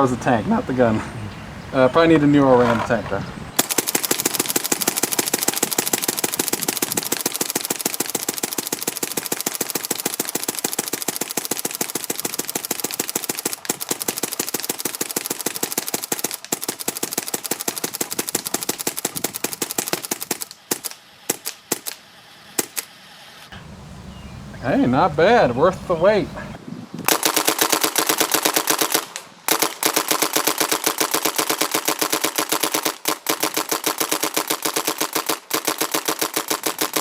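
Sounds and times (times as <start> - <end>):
paintball marker rapid firing: 3.6 - 22.9, 27.1 - 37.0.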